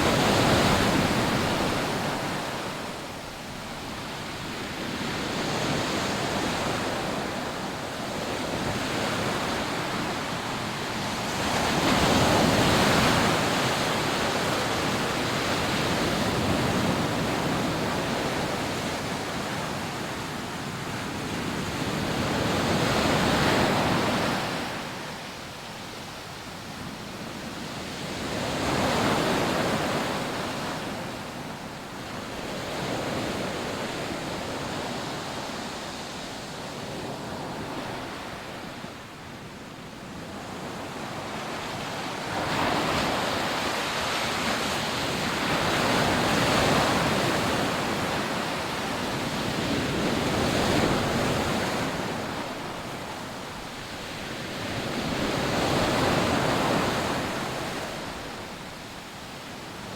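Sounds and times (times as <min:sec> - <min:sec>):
big waves crashing: 0:00.0 - 0:59.9
surf washing on beach: 0:00.0 - 0:59.9.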